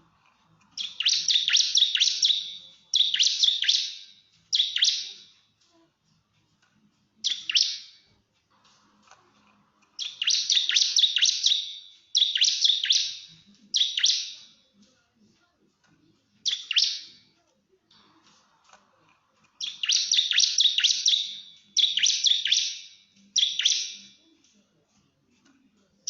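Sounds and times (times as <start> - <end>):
bird giving sharp rapid high notes: 0.8 - 5.2, 10.0 - 14.5, 19.6 - 24.0.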